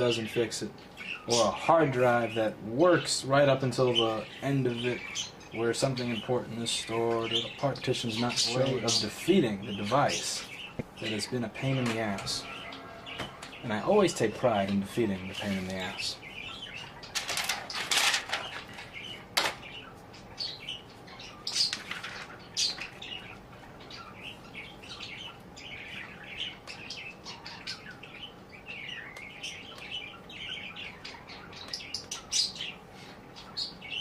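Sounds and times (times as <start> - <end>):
small bird chirping: 18.4 - 34.0.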